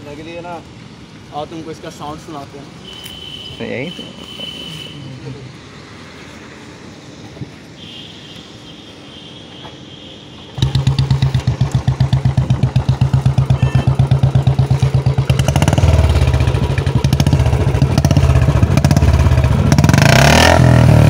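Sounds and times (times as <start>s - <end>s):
motorcycle engine thumping at idle: 10.6s - 19.0s
motorcycle engine revving: 10.6s - 21.0s.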